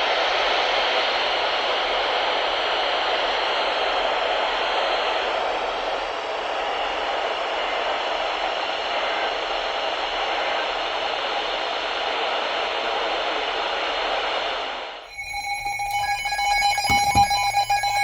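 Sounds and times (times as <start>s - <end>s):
electronic tones: 15.1s - 18.0s
low hum: 15.1s - 18.0s.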